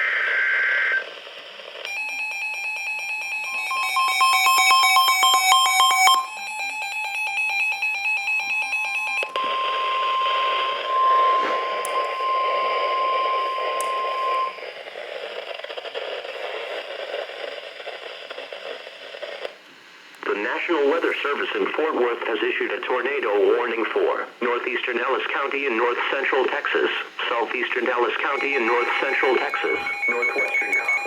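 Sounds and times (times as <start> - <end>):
radio static hiss: 0.0 - 1.8, 9.2 - 31.0
steady alert tone: 9.3 - 14.5, 28.4 - 31.0
rapid electronic beeping: 9.3 - 14.6, 27.8 - 31.0.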